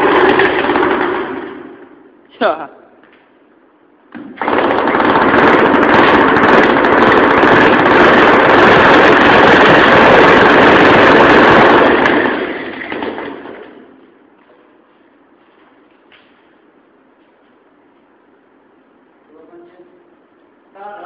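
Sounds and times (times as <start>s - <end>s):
concrete saw running: 0.0s - 1.9s, 4.2s - 13.8s.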